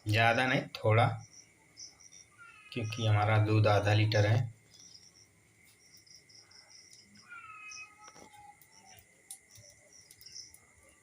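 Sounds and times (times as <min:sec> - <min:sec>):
faint animal chirping: 0:01.2 - 0:03.3, 0:04.8 - 0:11.0.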